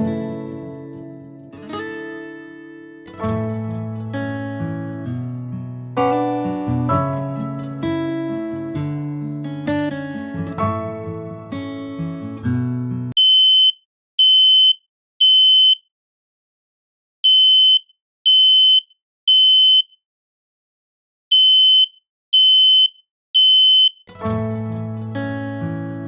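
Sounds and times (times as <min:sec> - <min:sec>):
acoustic guitar music: 0:00.0 - 0:13.1, 0:24.1 - 0:26.0
smoke alarm beeping: 0:13.2 - 0:15.8, 0:17.2 - 0:19.9, 0:21.3 - 0:24.0.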